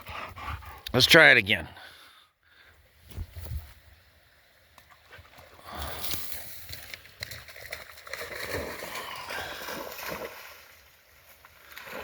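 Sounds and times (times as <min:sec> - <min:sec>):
dog splashing through water: 0:05.1 - 0:12.0.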